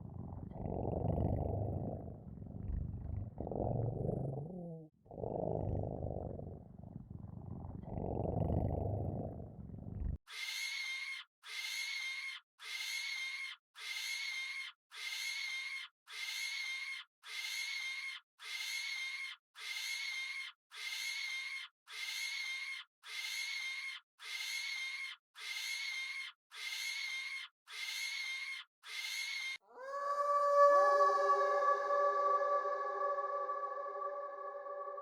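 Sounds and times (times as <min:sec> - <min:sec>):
animal's harsh shrill call: 0:16.4 - 0:35.0.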